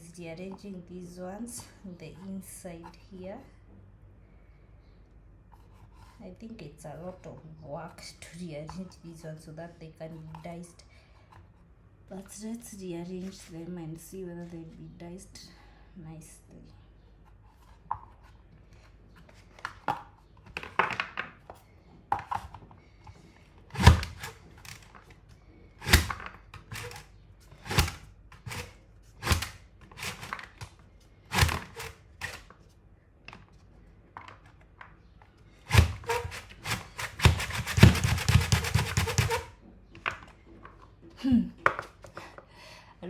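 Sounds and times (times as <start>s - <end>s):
mandoline slicer thunks: 23.7s - 24.9s, 25.8s - 30.6s, 35.7s - 39.5s.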